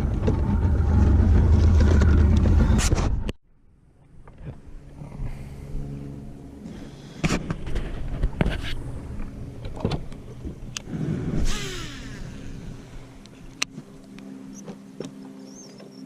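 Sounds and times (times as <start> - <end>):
boat motor running: 0.0 - 3.3, 4.0 - 16.0.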